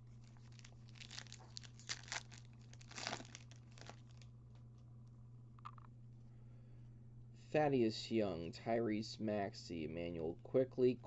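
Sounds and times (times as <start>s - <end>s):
foil wrapper tearing and crinkling: 0.2s - 4.3s.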